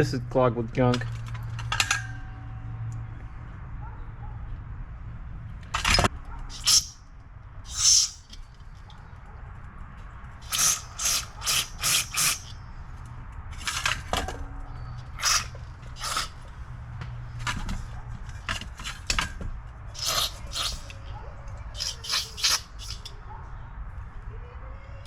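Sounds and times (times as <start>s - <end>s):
hissing spray bursts: 6.5s - 7.0s, 7.7s - 8.3s, 10.4s - 12.5s, 15.2s - 16.4s, 20.0s - 21.0s, 21.8s - 23.1s.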